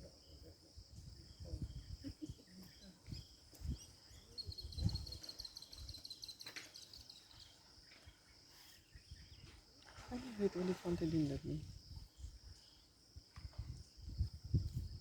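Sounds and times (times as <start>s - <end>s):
insects droning: 0.0s - 15.0s.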